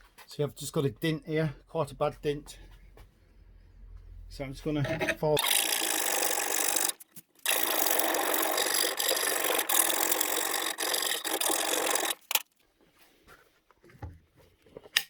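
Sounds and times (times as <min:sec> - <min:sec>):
file rasping on steel: 0:04.9 - 0:12.4.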